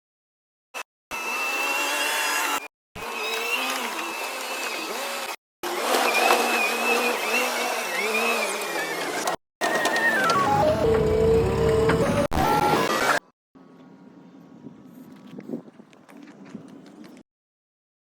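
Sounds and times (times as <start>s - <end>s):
earthmoving machine engine whining: 5.8s - 13.2s.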